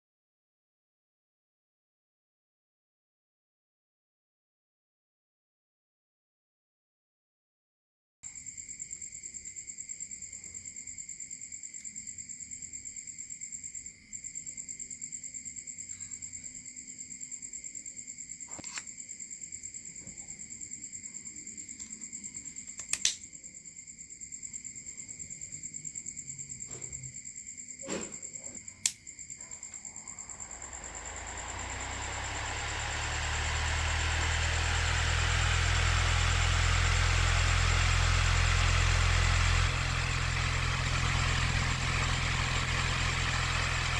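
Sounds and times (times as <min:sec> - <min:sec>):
small fan whirring: 0:28.6 - 0:43.9
high-pitched pulsing tone: 0:29.9 - 0:43.9.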